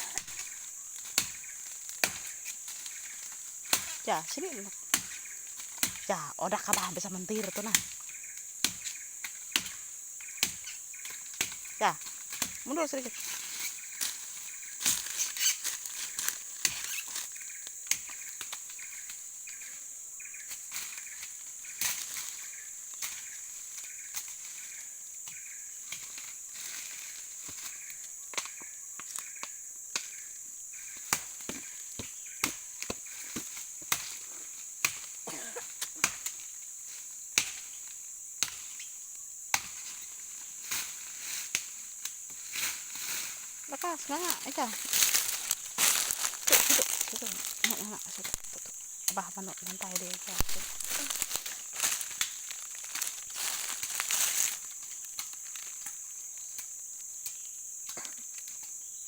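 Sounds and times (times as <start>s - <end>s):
chopping wood vine: 0.0s - 14.2s, 14.8s - 18.6s, 31.0s - 34.2s, 34.8s - 36.4s, 37.4s - 37.7s, 38.4s - 38.7s, 39.5s - 40.0s, 44.1s - 55.9s
steady high hiss: 35.8s - 59.0s.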